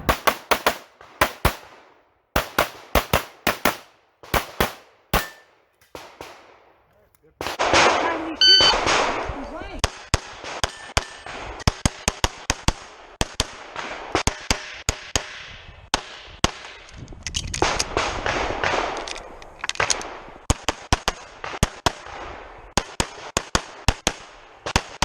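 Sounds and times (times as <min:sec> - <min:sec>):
rapid pistol fire: 0:00.0 - 0:06.8, 0:07.4 - 0:08.0.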